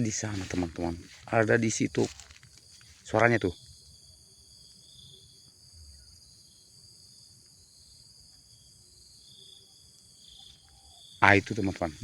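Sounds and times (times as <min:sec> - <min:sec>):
insects chorus: 0:00.0 - 0:12.0.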